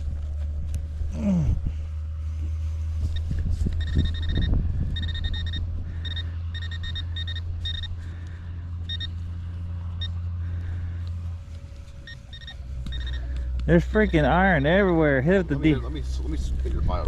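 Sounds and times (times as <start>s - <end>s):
steady low rumble: 0.0s - 17.0s
pinpointer beeping: 3.1s - 8.0s, 8.9s - 9.2s, 12.0s - 14.9s.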